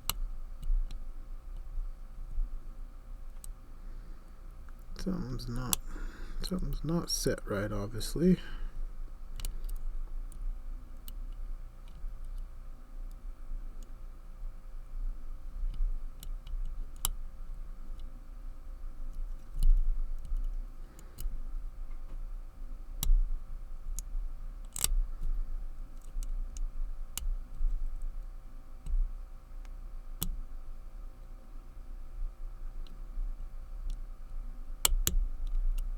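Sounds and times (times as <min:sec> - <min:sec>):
low steady hum: 0:00.0 - 0:35.9
metal clicks of lock picking: 0:09.4 - 0:09.8, 0:24.0 - 0:25.0.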